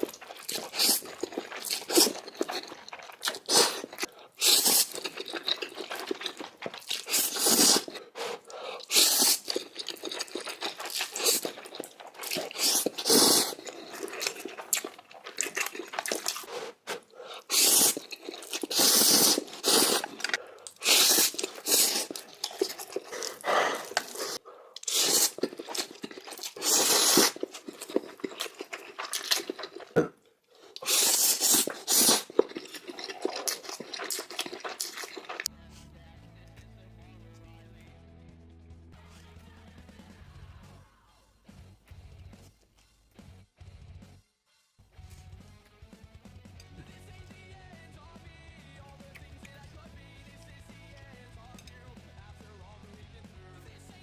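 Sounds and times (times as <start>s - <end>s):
chewing noodles: 0.0s - 35.5s.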